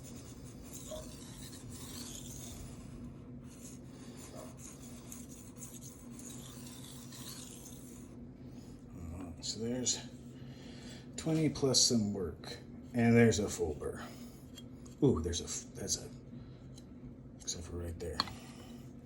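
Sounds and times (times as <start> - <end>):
knife scraping on whetstone: 0.0 - 8.1.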